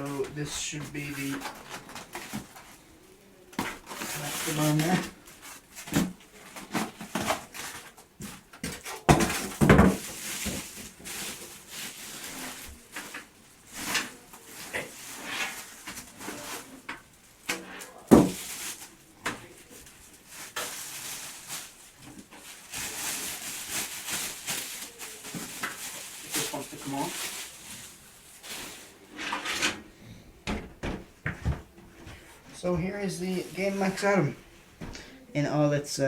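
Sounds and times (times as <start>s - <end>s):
packaging rustling and scraping: 0.0s - 29.9s
knocks and thumps: 30.4s - 31.8s.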